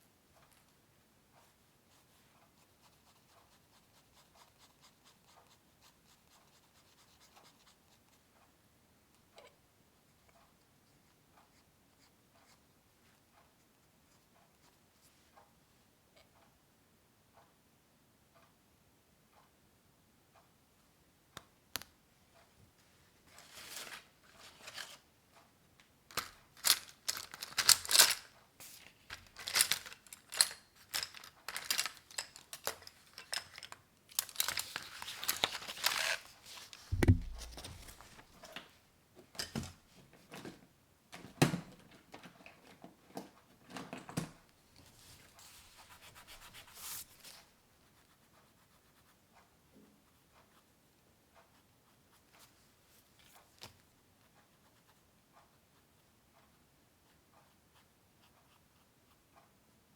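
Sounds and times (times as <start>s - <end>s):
dull thump: 36.9s - 38.0s.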